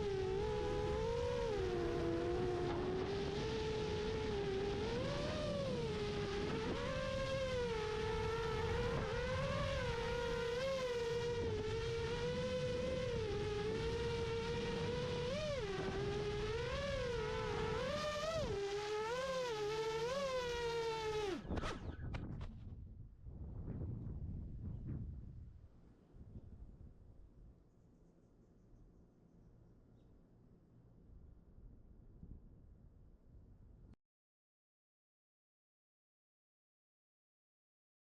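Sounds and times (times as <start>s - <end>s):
quadcopter motors whining: 0.0s - 22.6s.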